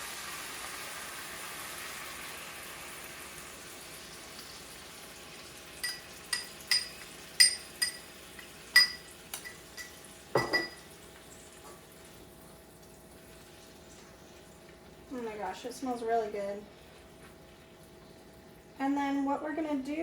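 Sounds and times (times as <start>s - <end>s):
sauce sizzling in a pan: 0.0s - 19.2s
utensil clinking against bowl: 5.8s - 10.8s.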